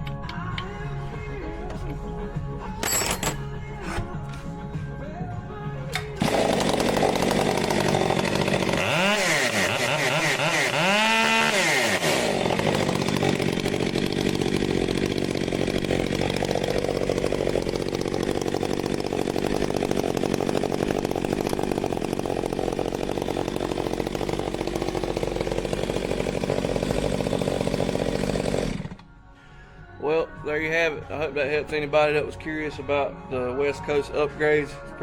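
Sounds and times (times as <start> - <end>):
chainsaw running: 5.9 - 29.1.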